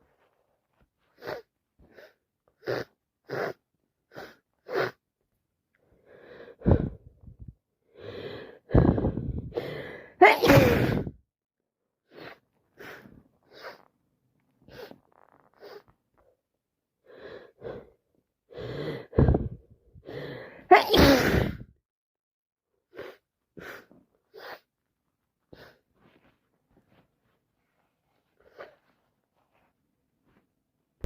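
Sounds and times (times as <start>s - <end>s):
gasping inhales: 6.0s - 11.1s, 17.0s - 21.7s
woman sniffling: 8.0s - 11.1s, 18.5s - 21.7s, 22.9s - 24.7s, 25.5s - 25.8s
woman sneezing: 10.2s - 11.1s, 20.6s - 21.7s.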